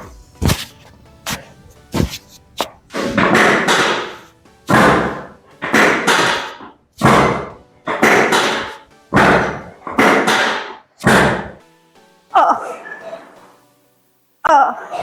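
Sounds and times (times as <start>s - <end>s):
loud sharp thumps: 0.3s - 11.7s.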